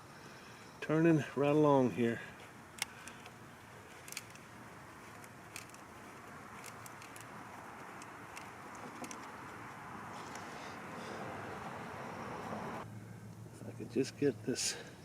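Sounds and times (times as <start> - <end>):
small hardware clicking: 5.1 - 5.9, 6.6 - 9.4.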